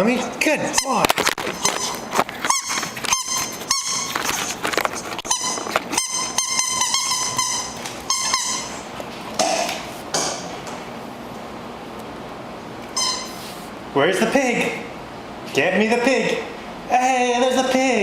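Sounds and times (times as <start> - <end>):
squeaky rubber toy squeaking: 0.7 - 4.4, 5.2 - 8.9, 13.0 - 13.4.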